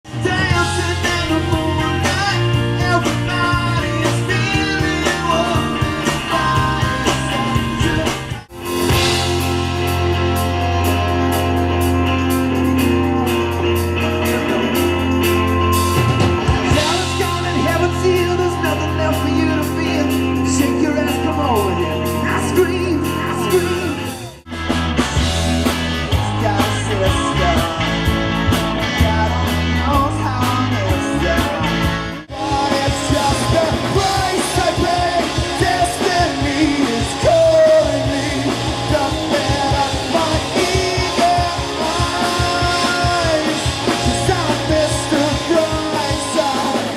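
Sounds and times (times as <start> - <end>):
rock band playing live: 0.0 - 46.9
person singing: 0.1 - 8.5, 16.6 - 24.4, 26.1 - 46.9.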